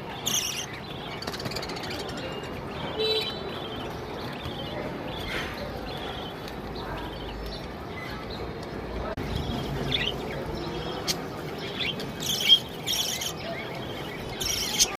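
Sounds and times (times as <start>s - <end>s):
budgerigars chirping: 0.1s - 4.0s, 10.9s - 15.0s.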